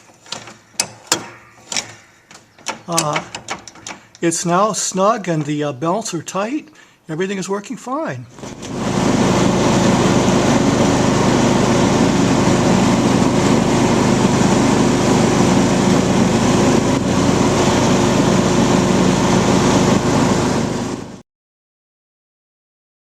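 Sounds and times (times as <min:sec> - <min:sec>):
lawn mower engine running: 0:08.3 - 0:21.2.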